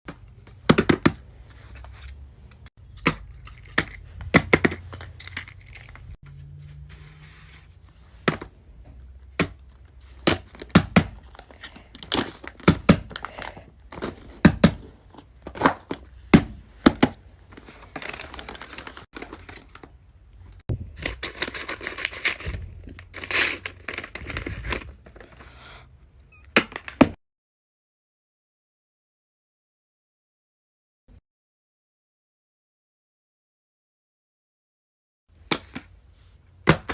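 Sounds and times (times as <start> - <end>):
crinkling rustling: 17.4 - 20.0, 21.0 - 25.5.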